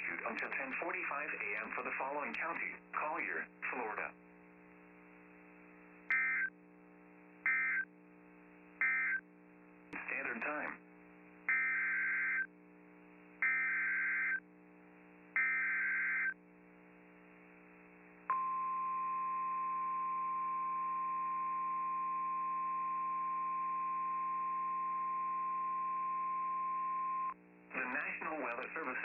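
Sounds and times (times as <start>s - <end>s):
digital data squawks: 6.1s - 6.5s, 8.8s - 9.2s
steady warning alarm tone: 6.1s - 6.5s, 7.5s - 7.9s, 8.8s - 9.2s, 11.5s - 12.5s, 13.4s - 14.4s, 15.4s - 16.4s.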